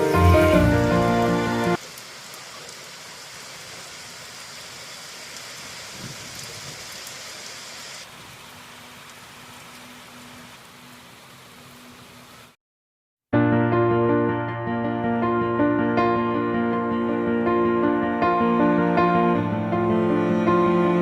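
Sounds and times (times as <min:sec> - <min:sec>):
steady rain: 0:00.0 - 0:12.6.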